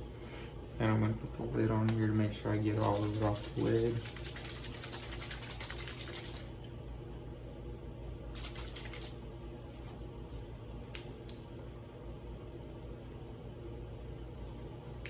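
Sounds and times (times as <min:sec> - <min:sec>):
water sloshing in shaken snow globe: 0:02.8 - 0:06.5, 0:08.3 - 0:09.2.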